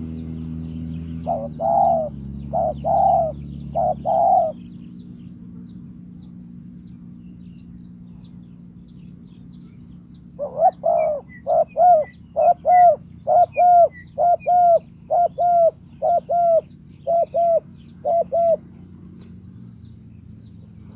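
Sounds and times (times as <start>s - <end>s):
dove cooing: 1.2s - 4.7s, 10.3s - 19.2s.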